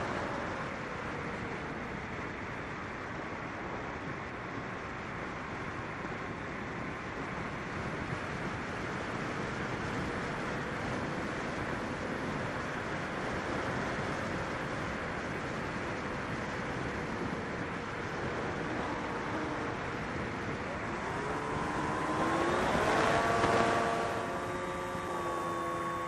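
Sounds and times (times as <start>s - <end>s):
drone motor whine: 17.9s - 26.0s.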